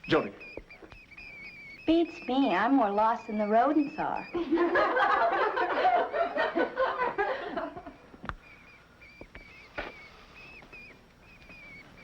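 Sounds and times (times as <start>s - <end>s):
rats squeaking: 0.0s - 5.0s, 8.0s - 12.0s
group of people laughing: 4.4s - 8.0s.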